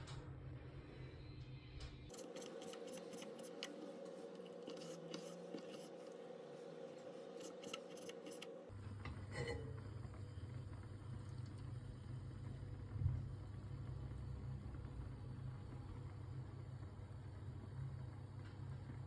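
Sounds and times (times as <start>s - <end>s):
knife cutting food: 2.1s - 6.2s, 7.0s - 8.5s.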